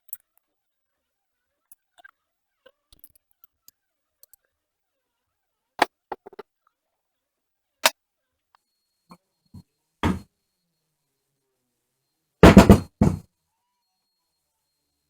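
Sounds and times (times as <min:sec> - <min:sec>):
sharp knocks of objects set down: 0:05.8 - 0:06.4.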